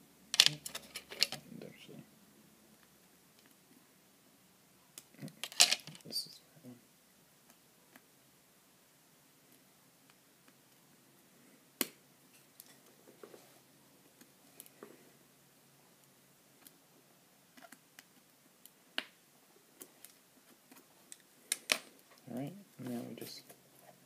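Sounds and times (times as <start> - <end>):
tools and small parts clicking: 0.4 - 1.4.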